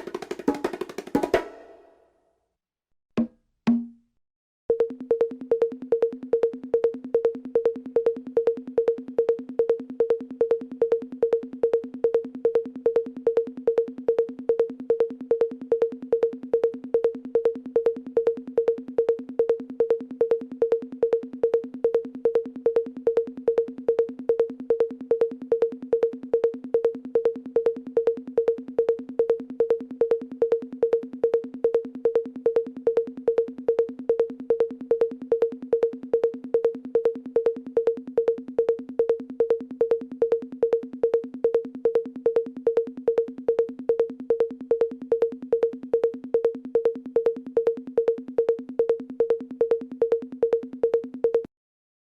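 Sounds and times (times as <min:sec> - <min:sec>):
drum machine pitched knock: 0:00.0 - 0:02.0, 0:03.2 - 0:04.1.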